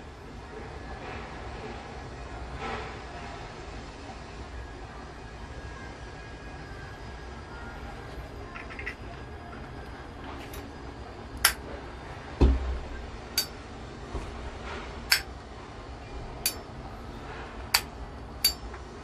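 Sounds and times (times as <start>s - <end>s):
dull knock: 12.4s - 12.8s
lighter lid clinking: 17.7s - 18.8s.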